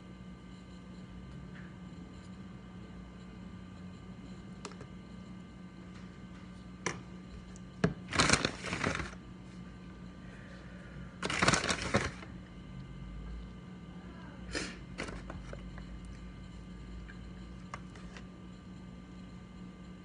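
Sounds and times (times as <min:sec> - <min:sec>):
steady low hum: 0:00.0 - 0:20.0
crinkling and rustling: 0:07.8 - 0:09.2, 0:11.2 - 0:12.3, 0:15.0 - 0:15.7.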